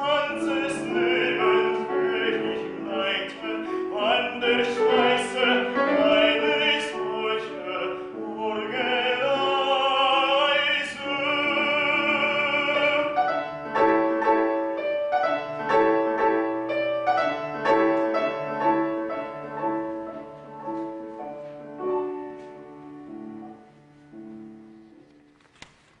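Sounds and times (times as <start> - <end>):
baritone singing: 0.0 - 20.8
piano: 0.0 - 26.0.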